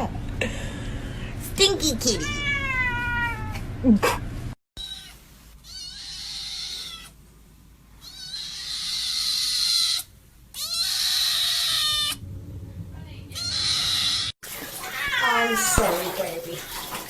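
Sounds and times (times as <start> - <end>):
cat hissing: 13.4 - 15.8.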